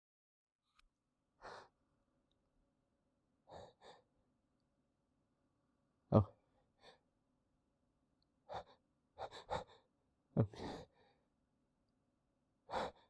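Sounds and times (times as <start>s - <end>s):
man gasping and breathing sharply: 10.4s - 11.0s.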